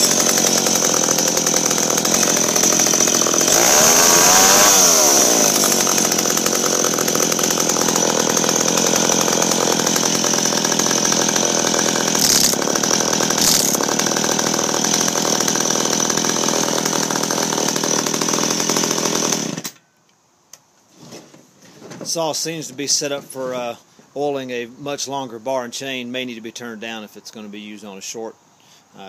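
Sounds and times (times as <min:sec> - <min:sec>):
chainsaw engine revving: 0:00.0 - 0:19.7.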